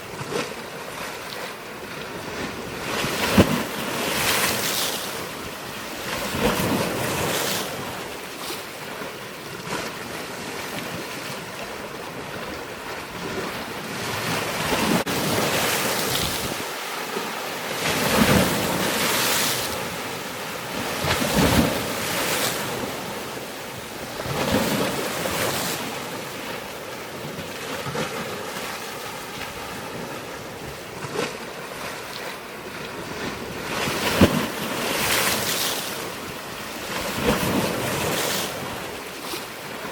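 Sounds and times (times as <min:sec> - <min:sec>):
water washing in surges: 0:00.0 - 0:39.9
wind noise on microphone: 0:09.6 - 0:16.8.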